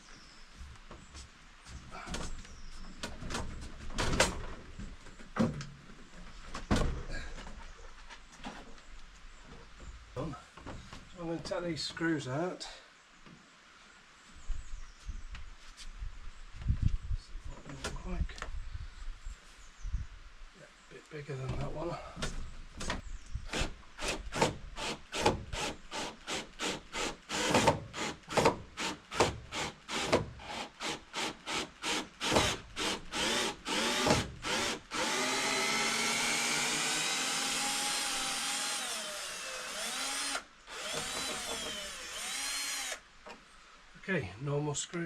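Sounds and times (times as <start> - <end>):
power drill driving screws: 23.6 - 43.0.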